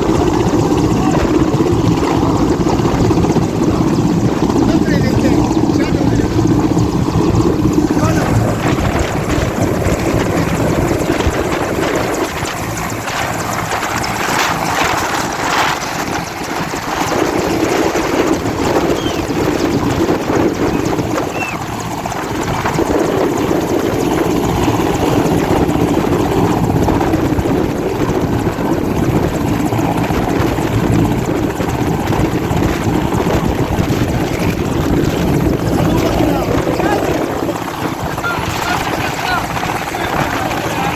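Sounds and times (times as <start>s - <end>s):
helicopter rotor and engine: 0.0s - 40.9s.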